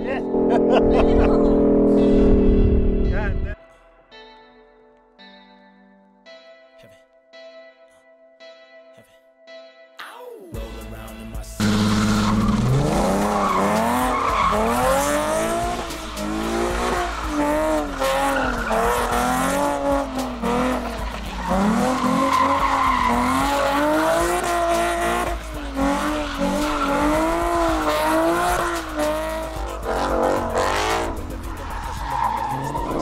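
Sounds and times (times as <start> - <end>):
car engine revving: 0.0 - 3.5, 11.6 - 33.0
tires squealing and skidding: 11.6 - 33.0.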